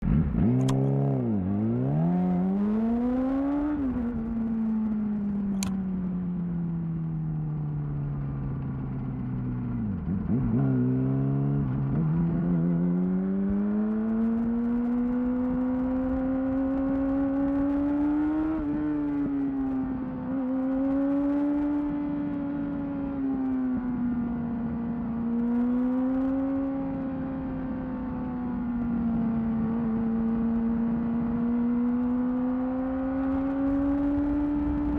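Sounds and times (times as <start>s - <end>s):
motorcycle engine revving: 0.0s - 5.8s, 8.8s - 34.9s.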